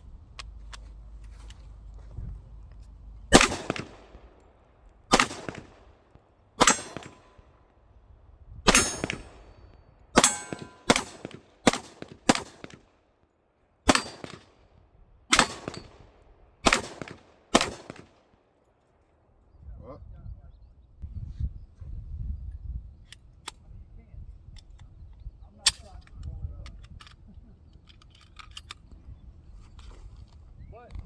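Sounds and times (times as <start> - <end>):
gunshots with echo: 3.3 - 4.1, 5.1 - 5.8, 6.6 - 7.4, 8.7 - 9.6, 10.2 - 12.8.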